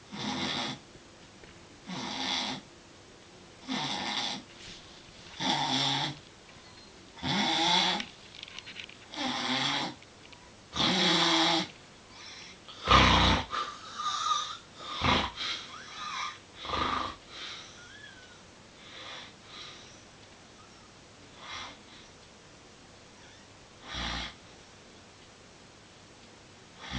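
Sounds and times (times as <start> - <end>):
loud snort: 0.1 - 0.8, 1.9 - 2.6, 3.6 - 4.4, 5.4 - 6.2, 7.2 - 8.1, 10.8 - 11.7, 12.8 - 15.5, 16.6 - 17.2, 23.8 - 24.4
person snoring: 0.1 - 0.8, 1.8 - 2.6, 3.6 - 4.4, 5.4 - 6.2, 7.2 - 8.1, 9.1 - 10.0, 10.7 - 18.3, 23.8 - 24.4.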